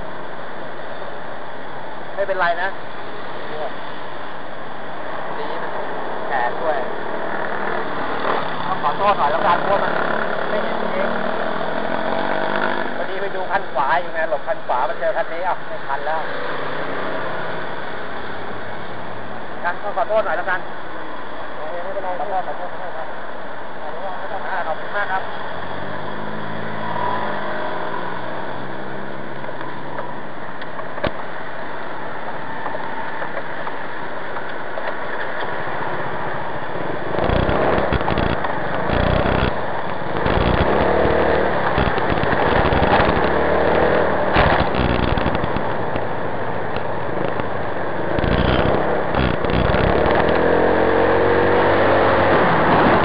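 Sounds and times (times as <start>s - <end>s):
motorcycle engine: 6.3s - 13.0s, 36.0s - 53.0s
wind buffeting microphone: 32.6s - 50.4s.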